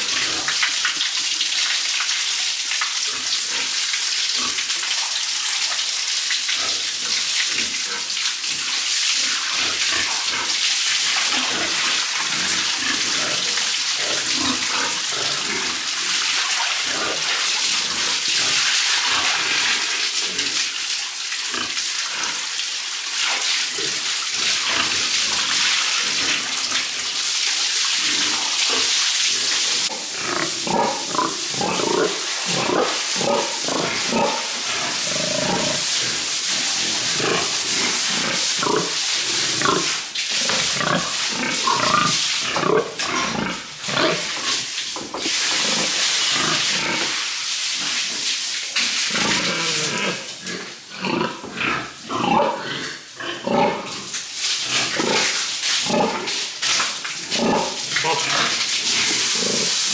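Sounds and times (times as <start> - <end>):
spraying water hiss: 0.0 - 59.9
pigs grunting: 9.6 - 20.6, 28.0 - 47.2, 49.1 - 54.1, 54.7 - 56.4, 57.3 - 59.9.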